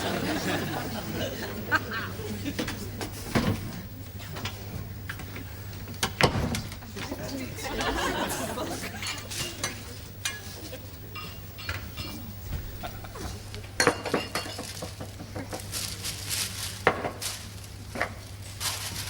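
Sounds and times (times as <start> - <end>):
steady low hum: 0.0 - 19.0
tableware clinking and knocking: 7.9 - 15.7.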